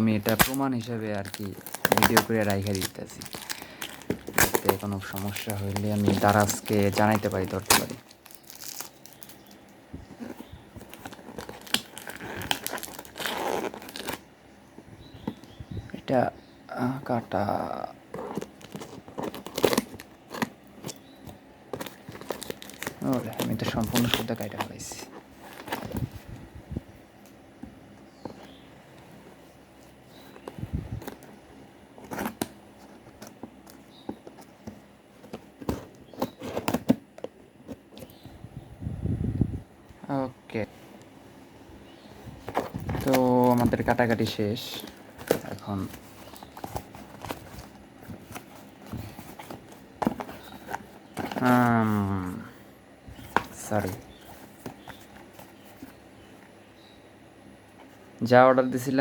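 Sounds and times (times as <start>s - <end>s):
packaging crinkling and tearing: 0.0s - 14.2s, 18.2s - 26.2s, 42.4s - 52.3s.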